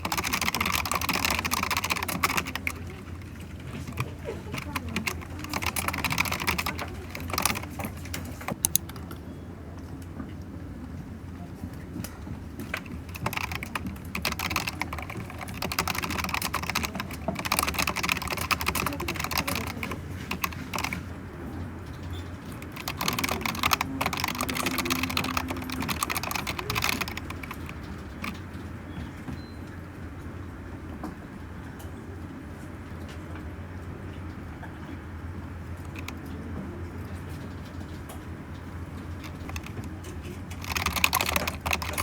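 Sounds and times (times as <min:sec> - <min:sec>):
keyboard typing clicks: 0:00.0 - 0:09.2, 0:12.4 - 0:21.1, 0:21.9 - 0:28.7, 0:35.8 - 0:36.2, 0:39.0 - 0:42.0.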